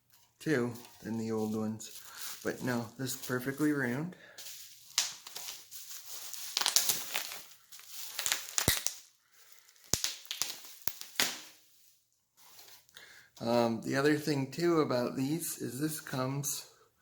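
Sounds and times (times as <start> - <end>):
packing material crinkling: 4.5 - 11.6.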